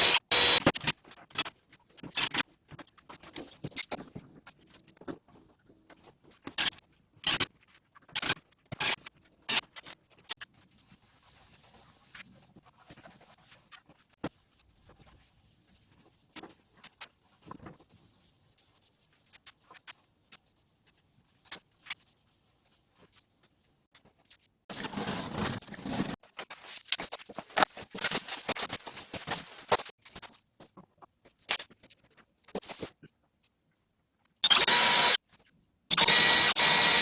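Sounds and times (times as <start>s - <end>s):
dense scratching and rubbing: 24.7s - 27.2s.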